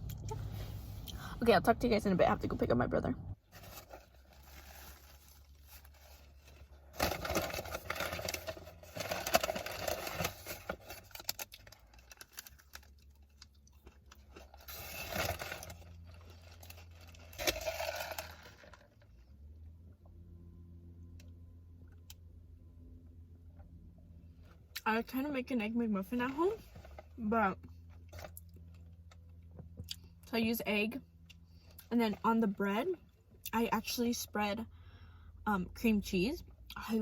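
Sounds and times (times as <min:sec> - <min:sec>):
paper and wrapper crinkling: 0:03.5 - 0:19.0.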